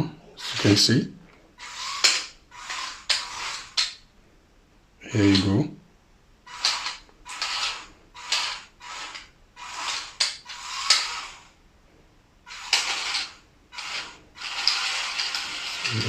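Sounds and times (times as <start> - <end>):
toy car motors whirring: 0.4 - 0.9, 1.6 - 4.0, 6.4 - 11.6, 12.5 - 16.0.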